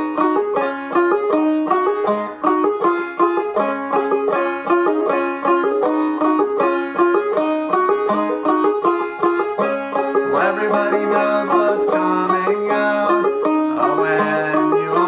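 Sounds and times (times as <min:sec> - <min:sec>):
banjo plucked notes: 0:00.0 - 0:15.0.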